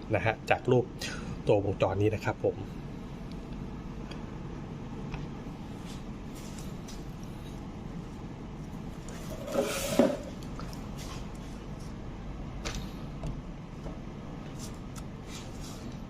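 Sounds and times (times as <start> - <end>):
low background hum: 0.0 - 16.0
scrape and clatter on workbench: 9.1 - 10.4.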